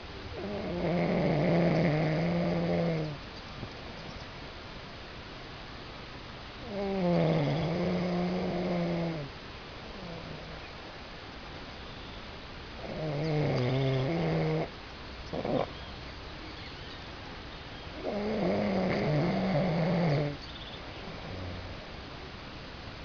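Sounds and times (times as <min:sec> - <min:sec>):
man snoring: 0:06.7 - 0:09.3, 0:12.9 - 0:14.7, 0:18.0 - 0:20.4.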